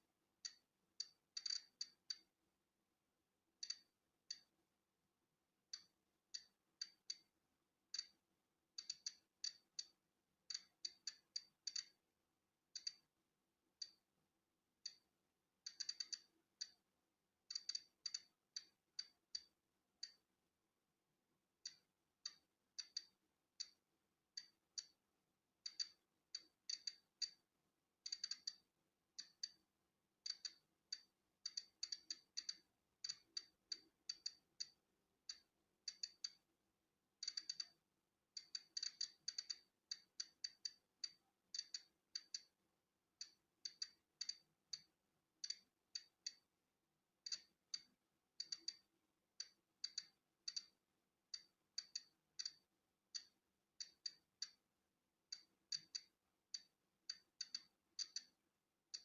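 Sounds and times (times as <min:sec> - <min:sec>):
geiger counter clicking: 0:00.4 - 0:02.3, 0:03.6 - 0:04.5, 0:05.7 - 0:07.3, 0:07.9 - 0:08.2, 0:08.8 - 0:12.0, 0:12.8 - 0:13.1, 0:13.8 - 0:14.0, 0:15.7 - 0:16.8, 0:17.5 - 0:20.3, 0:21.6 - 0:23.8, 0:24.4 - 0:25.0, 0:25.6 - 0:27.4, 0:28.0 - 0:29.6, 0:30.2 - 0:36.4, 0:37.2 - 0:37.8, 0:38.4 - 0:42.6, 0:43.2 - 0:46.5, 0:47.2 - 0:54.6, 0:55.3 - 0:59.0.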